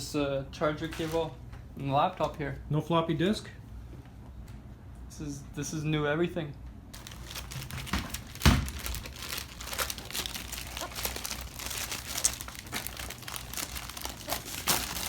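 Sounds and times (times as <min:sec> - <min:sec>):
packaging crinkling and rustling: 0:07.0 - 0:15.0.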